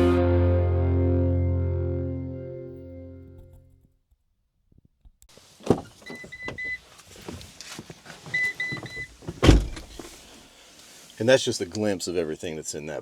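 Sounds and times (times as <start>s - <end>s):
music: 0.0s - 3.5s.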